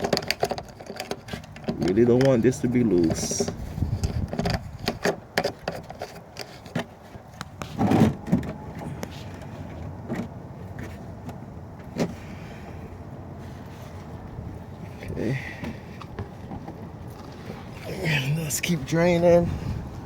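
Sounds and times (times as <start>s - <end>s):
tools and metal parts clicking: 0.0s - 6.8s.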